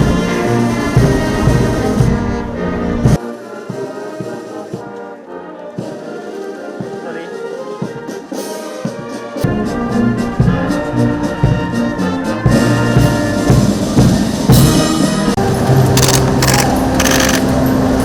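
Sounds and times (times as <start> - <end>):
brass music with percussion: 0.0 - 17.4.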